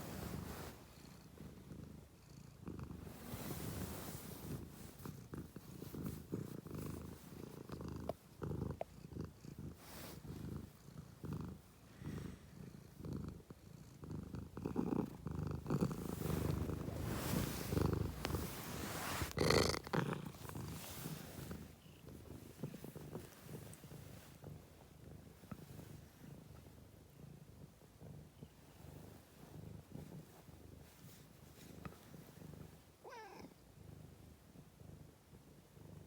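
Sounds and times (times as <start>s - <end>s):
cat purring: 0.0s - 36.0s
rustle: 15.8s - 24.4s.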